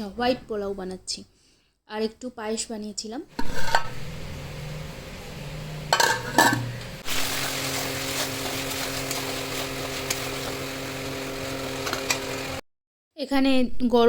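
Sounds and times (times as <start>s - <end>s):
kitchen utensils clinking: 3.4s - 4.0s, 5.9s - 12.6s.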